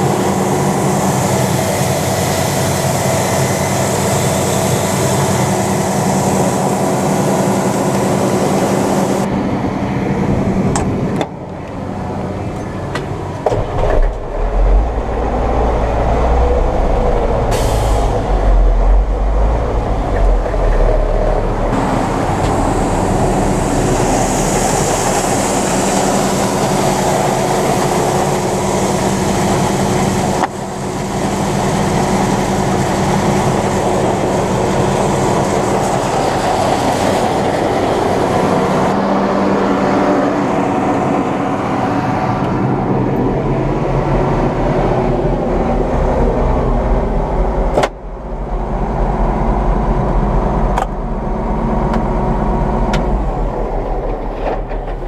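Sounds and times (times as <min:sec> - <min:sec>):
combine harvester drone: 0:00.0 - 0:55.0
deep low rumble: 0:09.2 - 0:29.6, 0:31.6 - 0:55.0.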